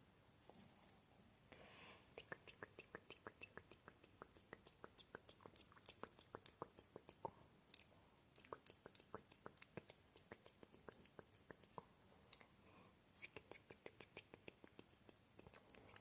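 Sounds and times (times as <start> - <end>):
tongue clicks and mouth smacks: 2.2 - 12.5, 13.2 - 16.0.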